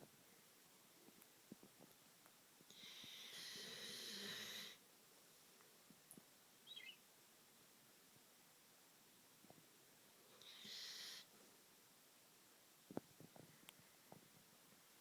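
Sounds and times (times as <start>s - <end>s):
dog snoring: 2.7s - 4.8s, 10.4s - 11.3s.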